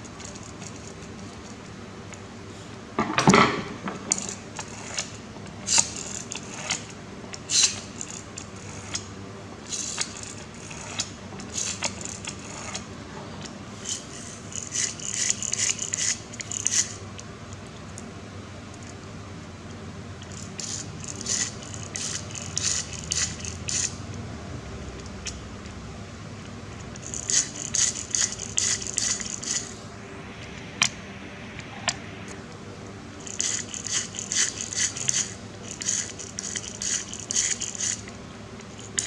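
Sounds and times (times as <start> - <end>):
toy-car parts clicking and clinking: 27.0 - 29.7.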